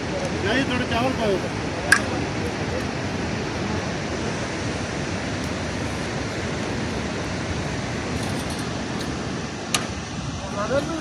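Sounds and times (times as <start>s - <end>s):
waterfall roaring: 0.0s - 11.0s.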